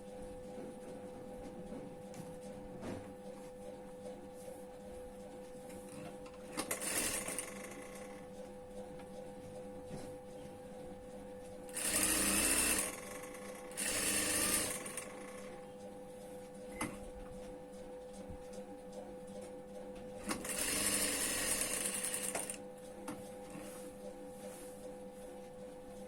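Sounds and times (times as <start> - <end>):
sewing machine stitching: 6.5 - 8.1, 11.7 - 15.5, 20.2 - 22.6.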